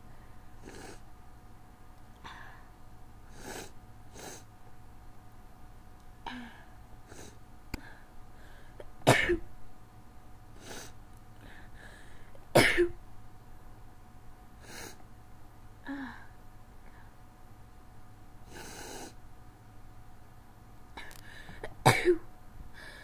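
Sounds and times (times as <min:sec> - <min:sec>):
breathy sounds: 0:02.2 - 0:04.4, 0:06.2 - 0:08.9, 0:15.8 - 0:17.2.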